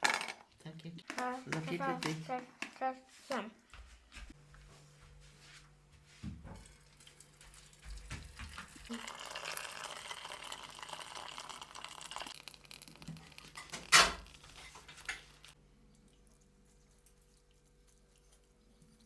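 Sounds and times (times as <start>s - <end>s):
tap water running into pot: 6.6s - 15.6s.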